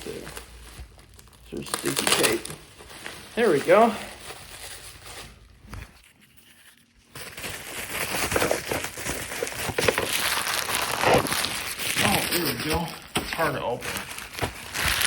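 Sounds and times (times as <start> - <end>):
package wrapping tearing: 0.8 - 2.6, 6.6 - 15.0.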